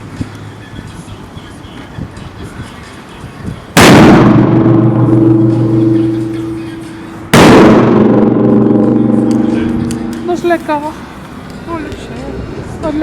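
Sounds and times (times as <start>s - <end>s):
loud firework bangs: 3.8s - 10.4s
ringing rumble: 4.2s - 10.6s.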